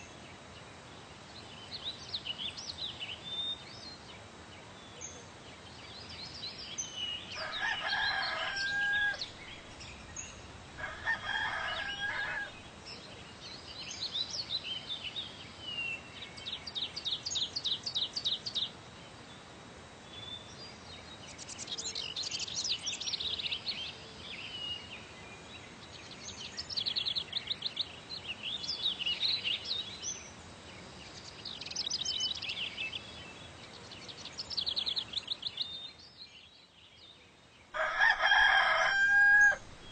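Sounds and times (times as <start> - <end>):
songbirds chirping and trilling: 0.0 - 39.9
rooster crowing: 7.4 - 9.3, 10.8 - 12.6, 37.8 - 39.9.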